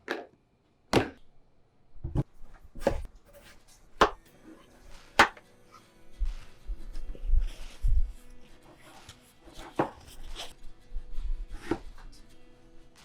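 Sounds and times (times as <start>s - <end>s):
knife chopping watermelon on board: 4.0s - 4.3s, 5.1s - 5.4s.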